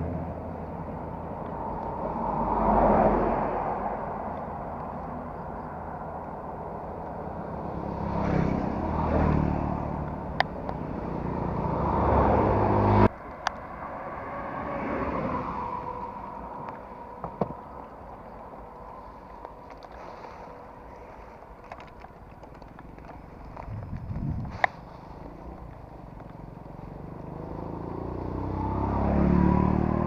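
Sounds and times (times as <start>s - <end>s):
wind and road noise: 0.0s - 30.0s
motorcycle engine running: 23.3s - 28.3s.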